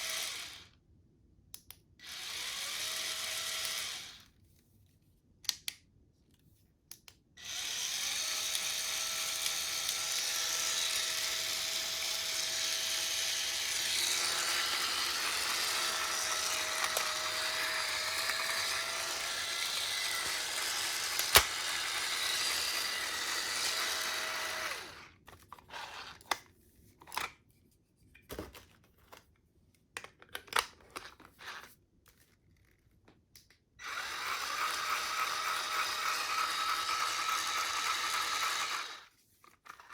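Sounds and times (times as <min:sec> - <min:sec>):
spin scrubber motor whirring: 0:00.0 - 0:00.6, 0:02.0 - 0:04.2, 0:07.4 - 0:25.1, 0:33.8 - 0:39.1
clicks and knocks of handling: 0:28.1 - 0:31.3.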